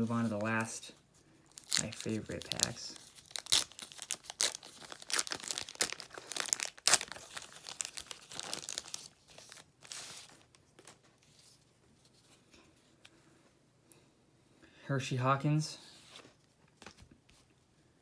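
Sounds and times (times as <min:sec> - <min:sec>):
wrapper tearing and crinkling: 0:01.5 - 0:10.6.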